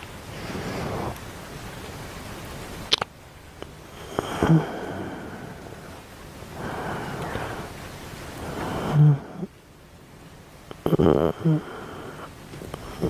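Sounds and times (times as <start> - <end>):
person snoring: 4.0 - 5.6, 10.9 - 12.3.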